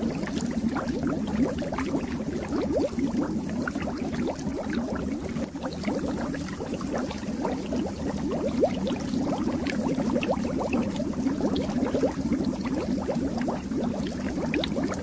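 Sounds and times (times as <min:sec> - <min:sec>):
fish tank water bubbling: 0:00.0 - 0:15.0.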